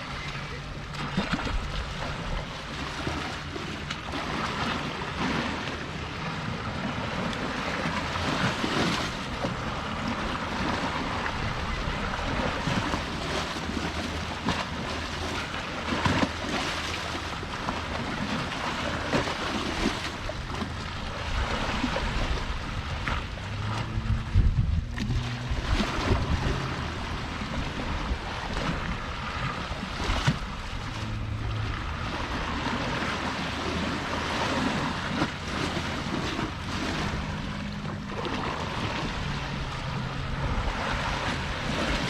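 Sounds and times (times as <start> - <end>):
sea waves washing ashore: 0.0 - 42.0
wind on microphone: 0.0 - 42.0.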